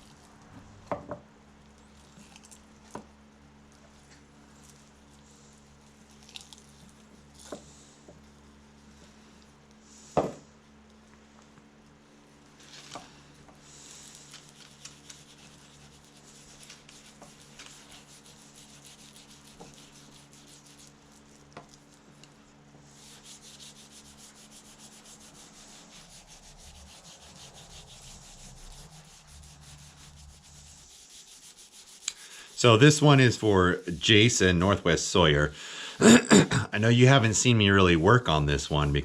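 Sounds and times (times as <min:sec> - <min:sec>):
low steady hum: 0:00.0 - 0:39.0
rag rubbing wood: 0:22.8 - 0:34.8.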